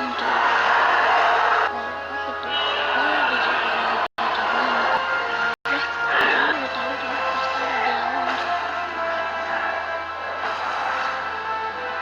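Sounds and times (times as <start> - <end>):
film background music: 0.0 - 12.0
wavering voice-like tone: 1.8 - 5.0.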